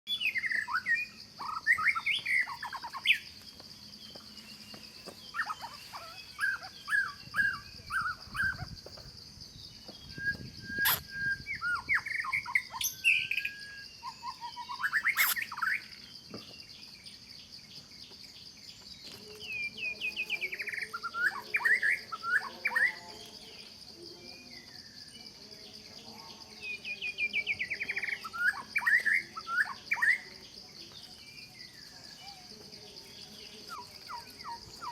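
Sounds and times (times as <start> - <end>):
birds chirping: 0.1 - 34.9
high-pitched insect drone: 4.4 - 16.1.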